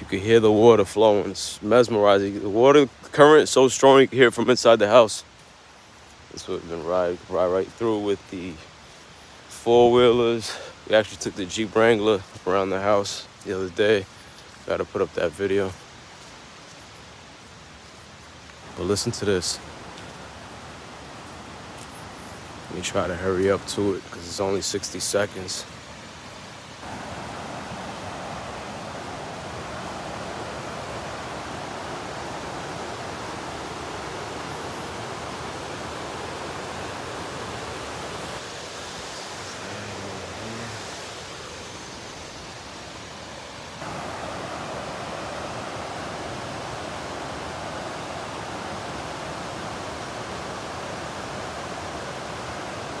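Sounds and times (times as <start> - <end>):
waterfall rushing: 17.4 - 53.0.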